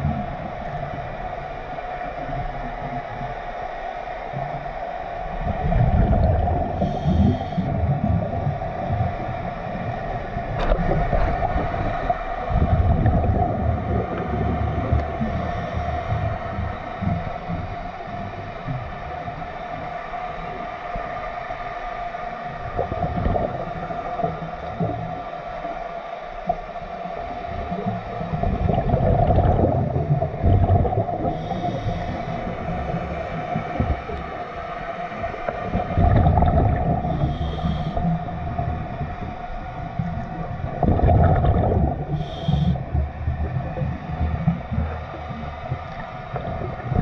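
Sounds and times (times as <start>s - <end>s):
motorboat engines hum underwater: 0.0s - 47.0s
diver regulator breathing: 6.6s - 10.8s, 13.8s - 18.6s, 30.4s - 43.2s.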